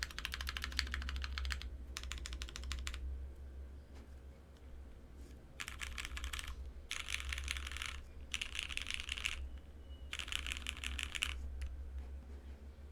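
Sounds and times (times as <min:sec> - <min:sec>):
mechanical keyboard typing: 0:00.0 - 0:03.0, 0:05.6 - 0:09.5, 0:10.1 - 0:11.7.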